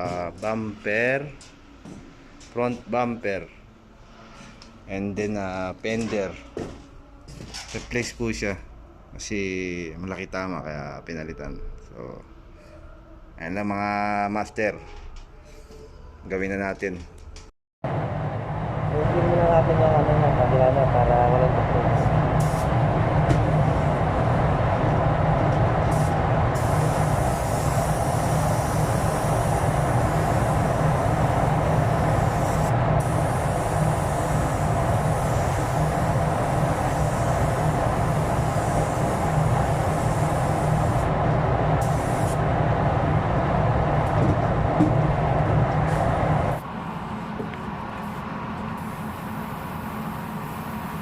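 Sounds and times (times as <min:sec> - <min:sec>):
spray gun air hiss: 0:22.0 - 0:22.7, 0:25.8 - 0:41.1, 0:41.8 - 0:42.4, 0:48.8 - 0:51.0.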